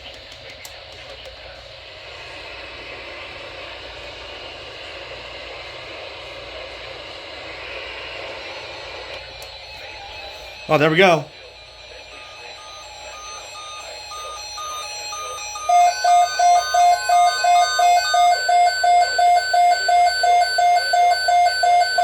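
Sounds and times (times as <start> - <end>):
loud low alarm beeping: 9.9 - 22.0.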